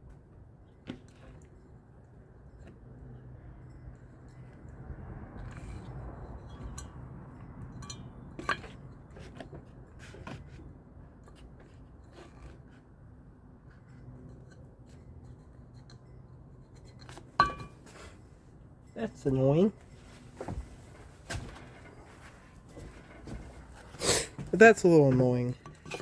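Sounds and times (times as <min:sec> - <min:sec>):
low steady hum: 0:00.0 - 0:26.0
small clicks and scrapes of parts: 0:05.3 - 0:12.9, 0:13.6 - 0:18.2.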